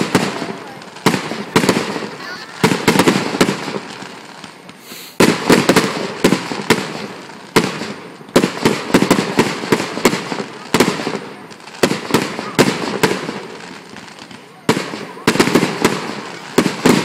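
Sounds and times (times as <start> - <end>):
firework shells bursting: 0.0 - 14.1
firework launch whoosh: 4.6 - 9.1.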